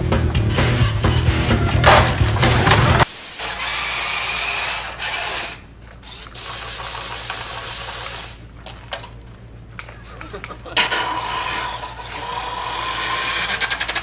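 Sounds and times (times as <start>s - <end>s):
motor whirring and grinding: 2.3s - 8.4s, 10.8s - 14.0s.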